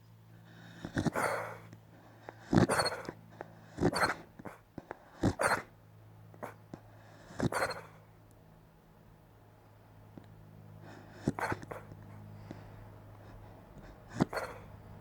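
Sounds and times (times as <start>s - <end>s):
dog breathy huffs: 0.3s - 5.8s, 6.4s - 8.1s, 10.7s - 15.0s
dog woofing in its sleep: 0.4s - 8.1s, 10.8s - 15.0s.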